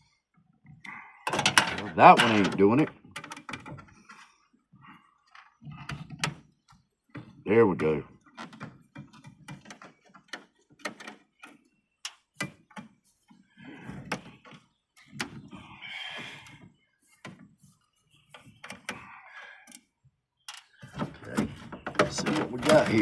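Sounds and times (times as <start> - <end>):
metal computer case clicks and rattles: 1.3 - 3.8, 21.0 - 23.0.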